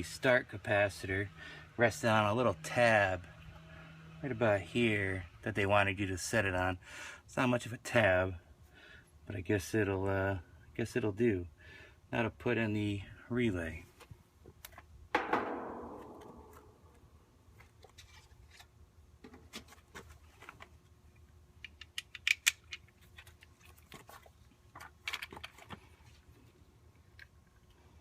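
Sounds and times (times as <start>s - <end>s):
sharp ringing knock: 15.2s - 16.8s.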